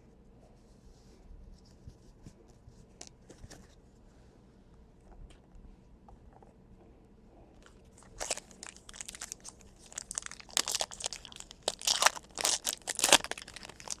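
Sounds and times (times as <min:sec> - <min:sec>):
plastic packaging crinkling: 0:07.6 - 0:14.0.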